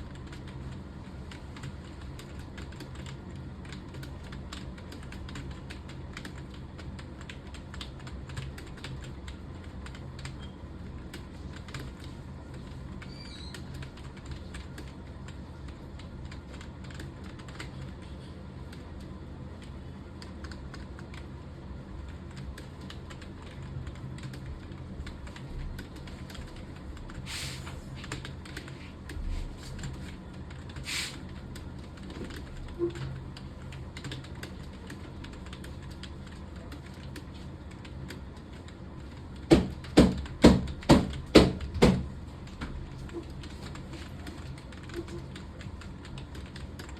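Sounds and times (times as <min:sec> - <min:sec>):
low steady hum: 0:00.0 - 0:46.9
keyboard typing: 0:00.1 - 0:18.9, 0:19.6 - 0:21.3, 0:22.0 - 0:27.3, 0:28.0 - 0:29.2, 0:29.8 - 0:42.0, 0:43.0 - 0:46.9
short swishes of noise: 0:27.3 - 0:27.8, 0:30.8 - 0:31.2.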